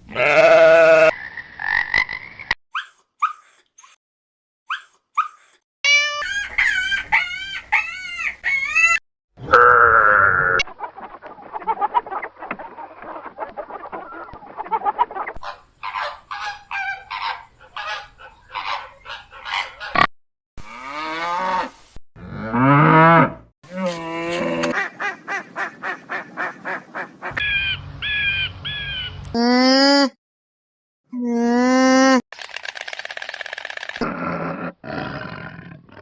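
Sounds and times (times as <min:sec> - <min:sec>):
animals bleating and lowing: 0:00.1 - 0:01.1, 0:09.4 - 0:10.6.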